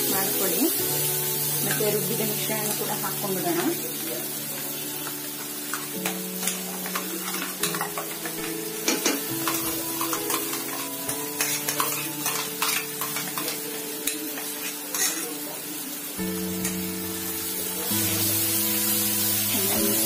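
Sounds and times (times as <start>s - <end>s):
food sizzling in a pan: 0.0s - 20.0s
spoon stirring and scraping pan: 4.5s - 15.4s.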